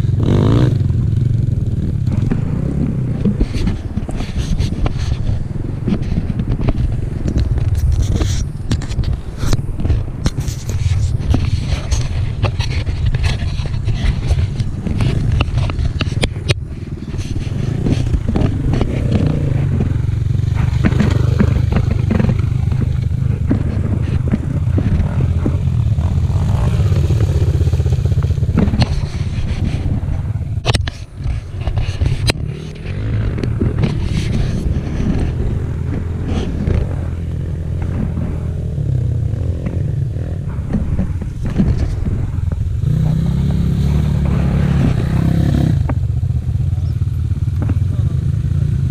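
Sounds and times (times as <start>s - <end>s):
wind on microphone: 0.0s - 48.2s
motorcycle engine rumble: 0.0s - 48.9s
bike knocks and clatter: 0.1s - 43.3s, 47.5s - 48.0s.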